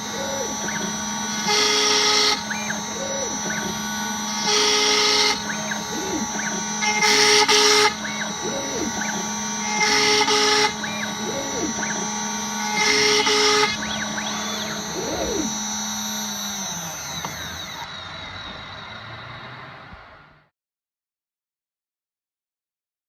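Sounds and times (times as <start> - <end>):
router cutting bursts: 0.0 - 20.3
axis motors whining: 0.0 - 20.5
router spindle whine: 0.0 - 20.5.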